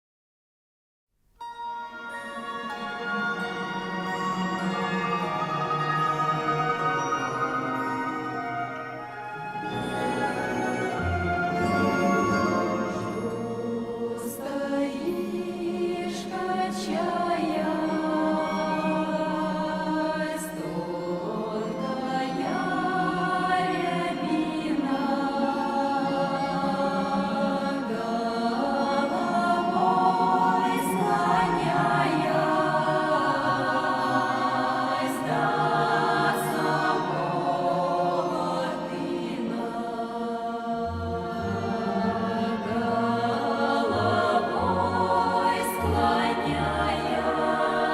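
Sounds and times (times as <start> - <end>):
low musical accompaniment: 1.4 - 47.9
choir singing: 2.0 - 47.9.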